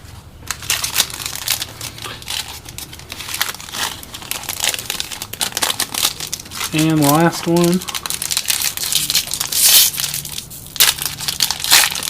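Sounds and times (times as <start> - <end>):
plastic wrapper crinkling: 0.5 - 12.0.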